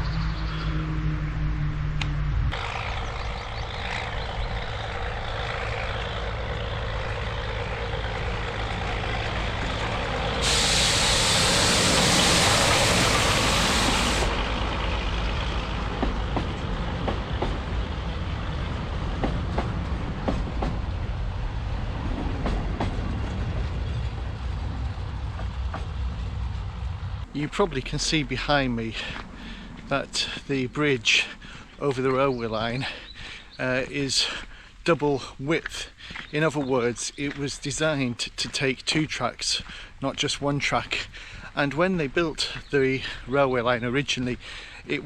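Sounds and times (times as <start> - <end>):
train engine rumble: 0.0 - 45.0
loud hiss of air or steam: 10.4 - 14.4.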